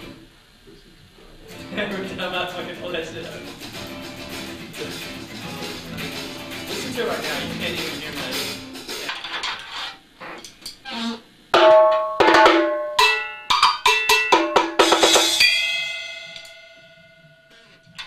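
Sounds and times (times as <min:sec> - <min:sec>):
drum fill: 0:01.6 - 0:09.2, 0:11.5 - 0:18.0.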